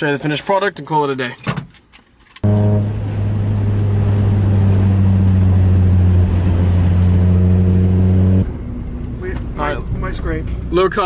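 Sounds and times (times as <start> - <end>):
car engine running: 2.4 - 11.0.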